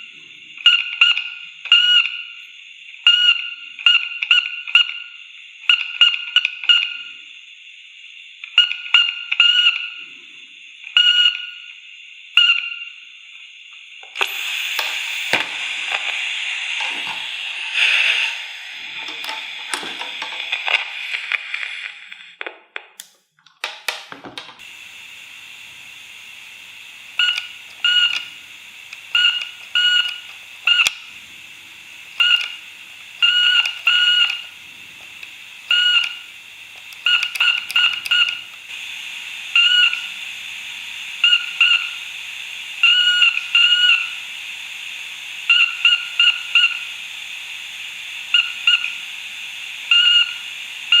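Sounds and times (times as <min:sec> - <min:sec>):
steady hiss: 0:10.0 - 0:23.2, 0:24.0 - 0:51.0
morse code beeps: 0:11.0 - 0:11.6, 0:27.2 - 0:28.3, 0:29.1 - 0:30.9, 0:32.2 - 0:32.6, 0:33.2 - 0:34.5, 0:35.7 - 0:36.2, 0:37.0 - 0:38.4.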